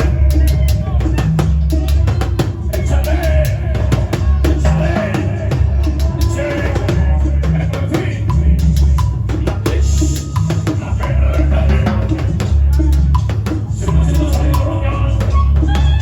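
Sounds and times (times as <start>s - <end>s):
loud music with heavy bass: 0.0s - 16.0s.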